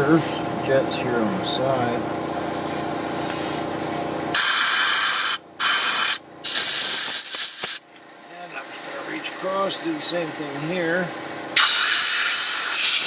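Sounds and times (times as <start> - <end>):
steady low hum: 0.0 - 7.2, 7.9 - 13.0
compressed air hissing blasts: 2.7 - 7.8, 11.6 - 13.0.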